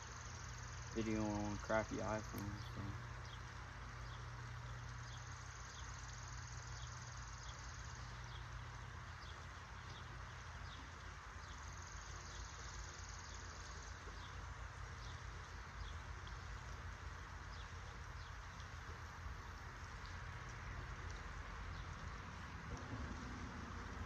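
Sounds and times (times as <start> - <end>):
high insect buzz: 0.0 - 3.1, 11.4 - 14.4
creek water flowing: 0.0 - 24.0.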